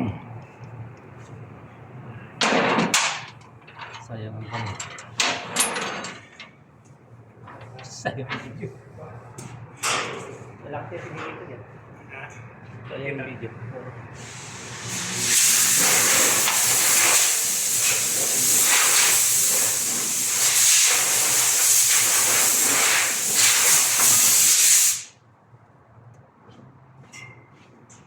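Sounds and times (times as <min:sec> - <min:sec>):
pressurised jet hissing: 0:14.2 - 0:25.1.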